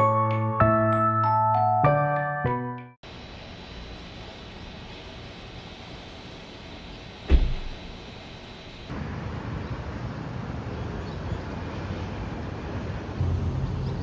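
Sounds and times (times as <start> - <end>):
heavy thump: 7.3 - 7.9.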